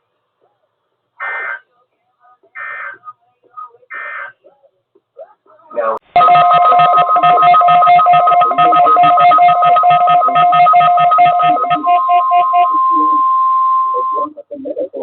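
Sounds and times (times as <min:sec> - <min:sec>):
rapid pulsing beep: 0:06.2 - 0:14.4
steady warning alarm tone: 0:06.2 - 0:14.4.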